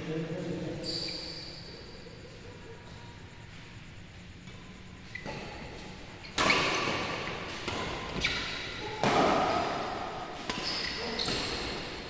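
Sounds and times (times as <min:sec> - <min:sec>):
rackets hitting shuttlecock: 0:06.3 - 0:12.0.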